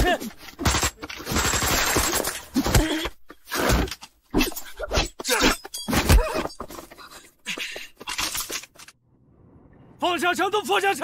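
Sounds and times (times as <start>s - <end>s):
people grunting and crying out: 0.0s - 0.9s, 2.3s - 8.3s.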